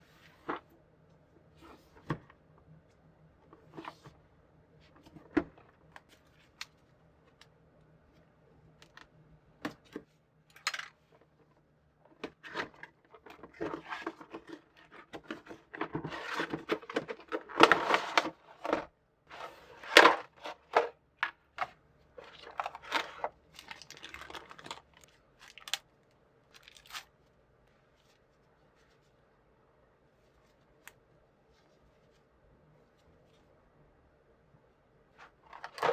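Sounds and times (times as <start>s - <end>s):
plastic and cardboard crinkling: 12.2s - 29.1s, 35.2s - 35.9s.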